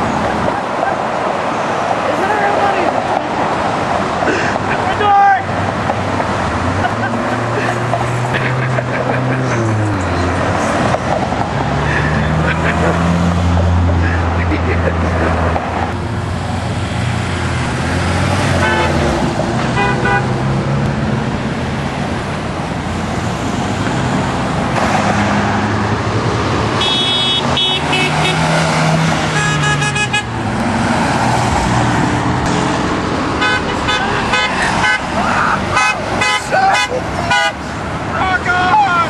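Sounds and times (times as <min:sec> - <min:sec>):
road traffic passing: 0:00.0 - 0:39.0
car horns honking: 0:18.4 - 0:20.5, 0:26.7 - 0:30.4, 0:33.3 - 0:39.0.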